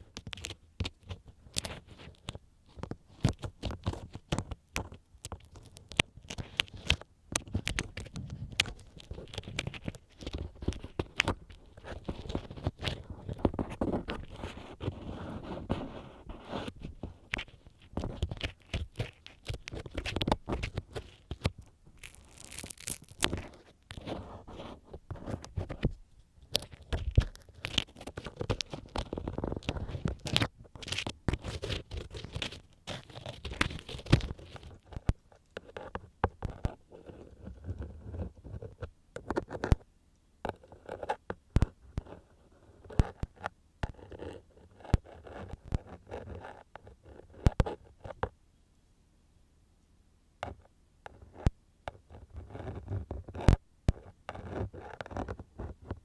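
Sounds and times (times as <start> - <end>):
ear pick scraping in microphone: 7.6 - 21.3, 22.0 - 25.9.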